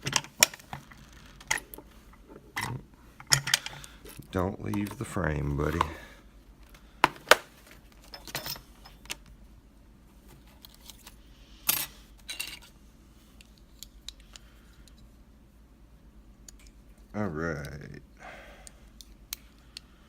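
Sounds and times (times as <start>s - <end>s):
metal lock parts clicking: 1.4s - 1.8s.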